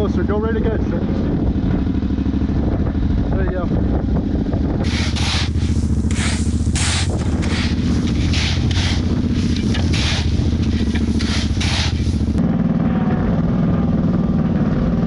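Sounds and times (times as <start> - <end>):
engine running steadily: 0.0 - 15.0
shovel scraping stone: 4.8 - 12.3.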